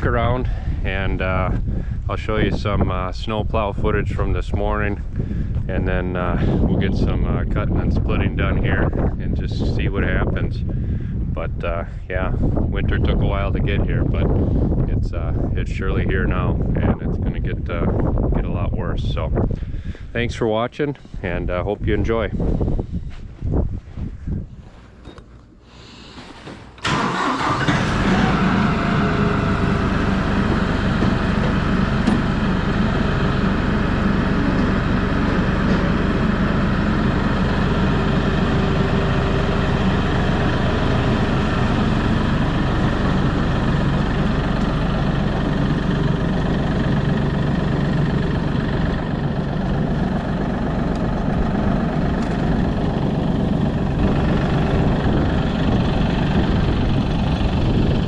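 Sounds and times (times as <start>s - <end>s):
snowplow engine running: 26.4s - 58.0s.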